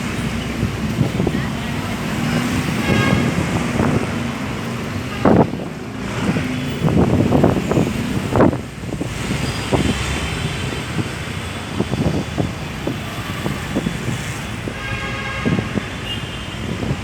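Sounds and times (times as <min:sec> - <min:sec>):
road traffic: 0:00.0 - 0:17.0
wind buffeting microphone: 0:00.0 - 0:17.0.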